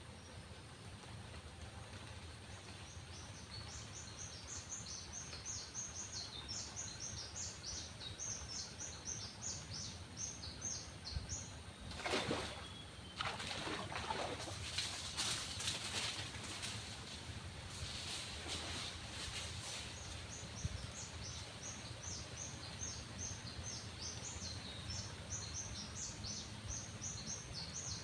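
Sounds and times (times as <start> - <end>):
low outdoor hum: 0.0 - 28.0
songbird chirping: 0.0 - 28.0
rushing rustling noise: 14.4 - 21.0.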